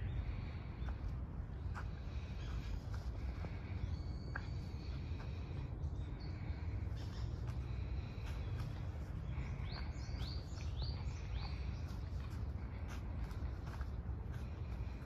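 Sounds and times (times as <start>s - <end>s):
low outdoor rumble: 0.0s - 15.0s
songbirds chirping: 0.0s - 15.0s.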